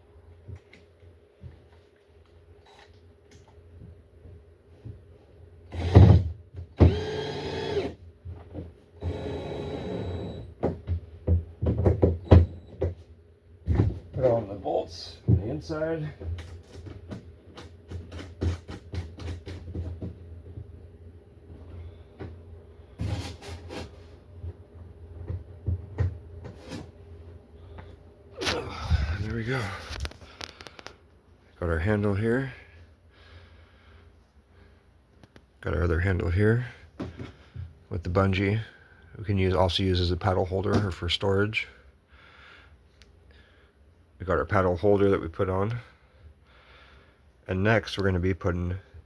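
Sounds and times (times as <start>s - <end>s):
power drill whining: 5.7s - 6.1s, 6.8s - 8.0s, 9.0s - 10.5s.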